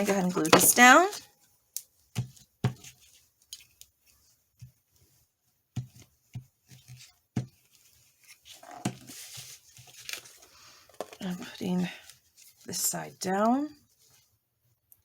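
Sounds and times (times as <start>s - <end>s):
paper rustling and scraping: 0.0s - 1.2s, 2.2s - 12.8s.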